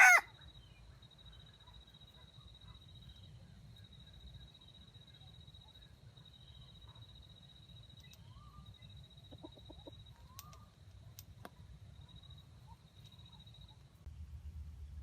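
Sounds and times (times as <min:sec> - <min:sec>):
chicken clucking: 0:09.3 - 0:10.1
low rumble: 0:14.1 - 0:15.0.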